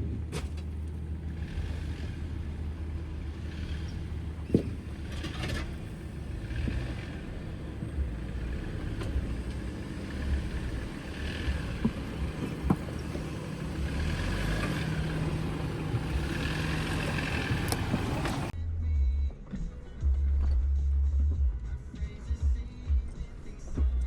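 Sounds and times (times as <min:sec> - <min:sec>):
off-road engine at low revs: 0:00.0 - 0:18.6.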